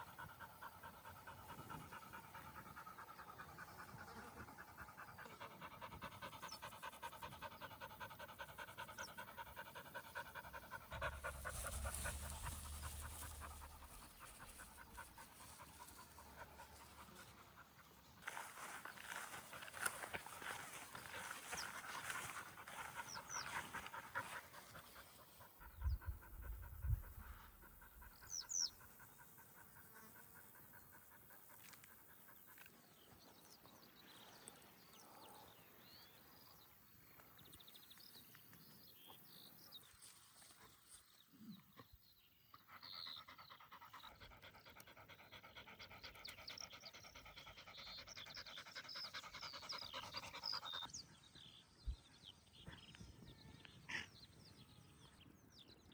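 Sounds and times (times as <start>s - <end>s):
dog panting: 0.0s - 18.4s, 19.1s - 32.6s, 42.6s - 51.0s.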